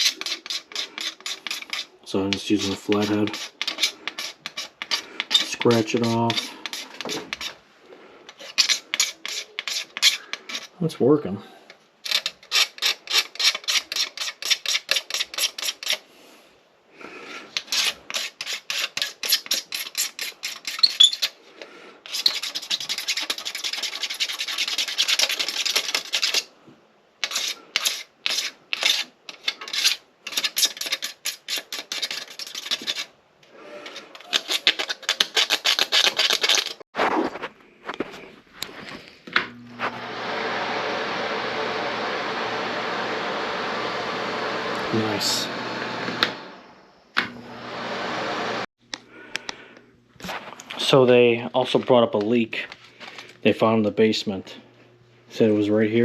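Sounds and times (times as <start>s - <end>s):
screwdriver scraping rust off metal: 0.0s - 7.6s, 8.3s - 10.8s, 12.0s - 16.0s, 17.5s - 21.4s, 22.0s - 26.5s, 27.2s - 33.1s, 33.8s - 36.8s.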